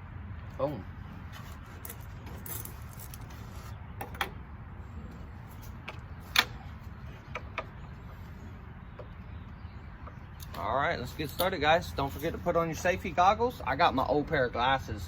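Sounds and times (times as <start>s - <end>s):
sharp clicks and knocks of handling: 7.2s - 8.0s.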